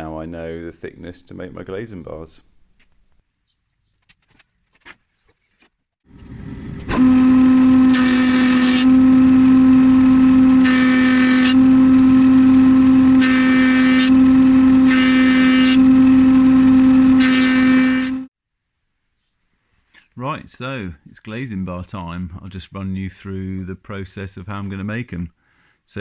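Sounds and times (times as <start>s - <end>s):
timber cutting bursts: 6.1s - 18.3s
woodworking machine whining: 6.1s - 18.3s.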